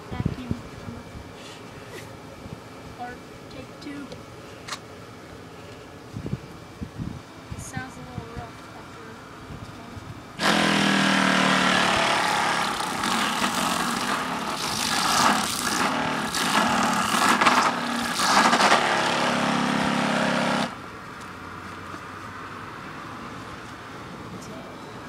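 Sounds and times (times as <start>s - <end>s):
vacuum motor whine: 10.4s - 20.8s.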